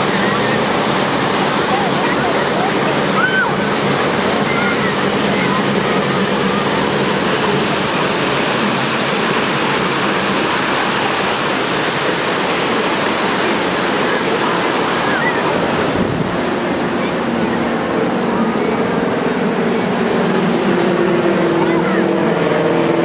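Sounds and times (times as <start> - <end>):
distant propeller plane engines droning: 0.0 - 23.0
surf: 0.0 - 23.0
wind on microphone: 12.7 - 20.3.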